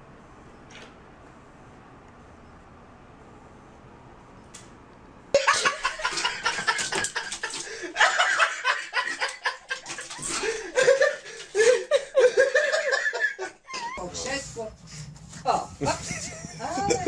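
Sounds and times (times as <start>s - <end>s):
people laughing hard: 5.4s - 14.0s.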